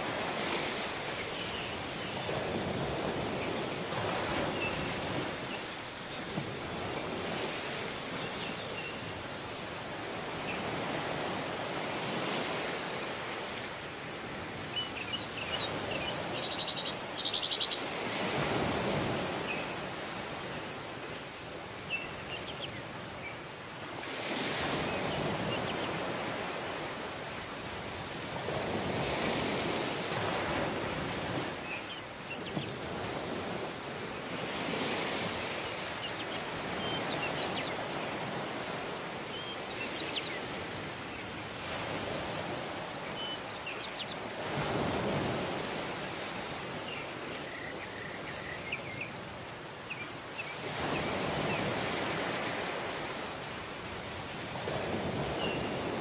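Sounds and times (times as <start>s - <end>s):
ocean waves washing in: 0.0s - 22.0s, 22.8s - 56.0s
small birds chirping: 14.8s - 17.9s.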